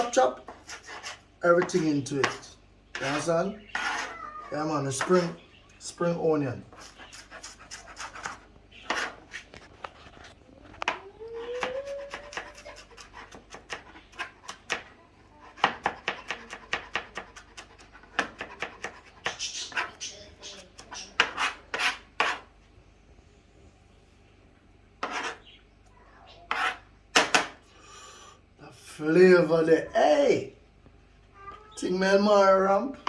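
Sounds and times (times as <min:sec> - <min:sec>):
knife chopping on cutting board: 0:11.6 - 0:14.9, 0:15.5 - 0:19.9, 0:20.8 - 0:22.4, 0:25.0 - 0:25.4.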